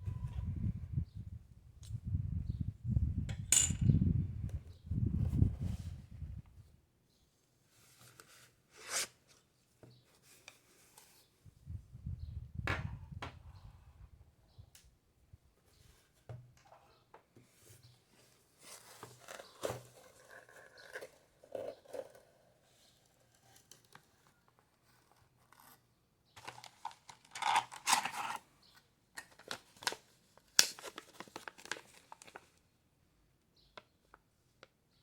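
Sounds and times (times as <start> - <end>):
packaging tearing and crinkling: 26.4 - 28.4, 30.6 - 32.4.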